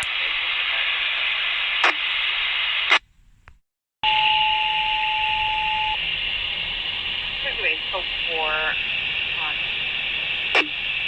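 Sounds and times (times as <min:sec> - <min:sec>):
scanner radio static hiss: 0:00.0 - 0:03.5, 0:05.1 - 0:11.0
radio click: 0:00.0 - 0:03.6, 0:07.4 - 0:11.0
steady high-pitched beep tone: 0:04.0 - 0:11.0.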